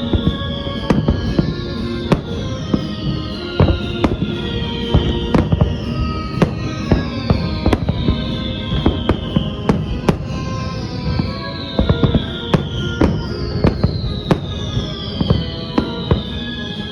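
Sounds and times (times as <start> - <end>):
falling whistle tones: 0.0 - 16.9
fireworks bangs: 0.0 - 16.9
music: 0.0 - 16.9.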